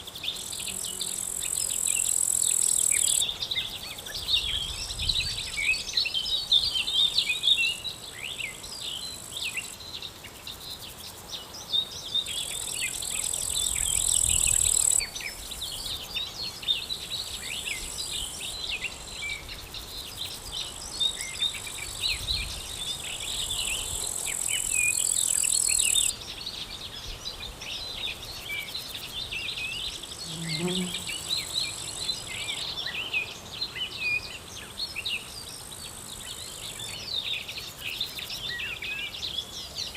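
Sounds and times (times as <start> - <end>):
high insect trill: 0.0 - 6.1, 12.2 - 26.2, 28.1 - 32.8
small birds chirping: 0.0 - 39.9.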